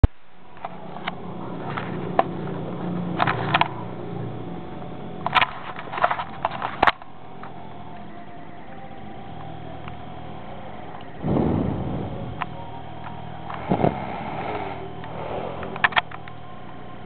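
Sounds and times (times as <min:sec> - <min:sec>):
steady low hum: 0:00.0 - 0:17.0
person snoring: 0:13.6 - 0:15.8.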